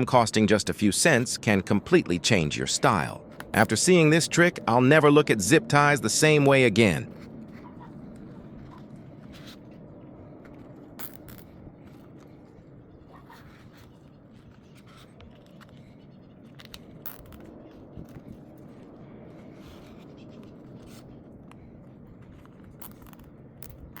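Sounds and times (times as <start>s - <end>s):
soft clicks and scrapes: 7.1s - 24.0s.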